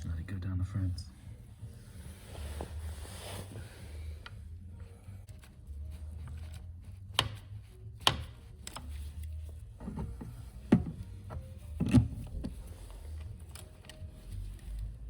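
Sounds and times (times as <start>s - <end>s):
tools knocking and clicking: 7.1s - 8.9s, 9.8s - 12.5s.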